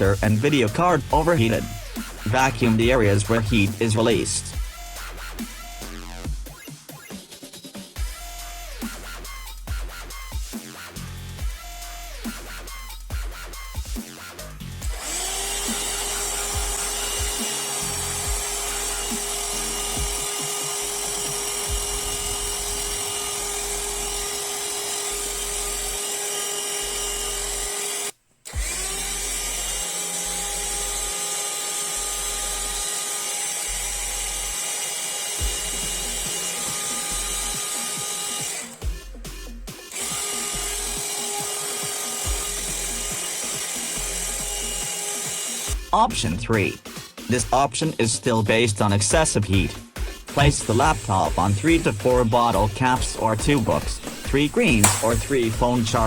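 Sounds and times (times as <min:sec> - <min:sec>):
small vacuum cleaner motor whine: 0:14.8 - 0:38.9, 0:39.9 - 0:45.8.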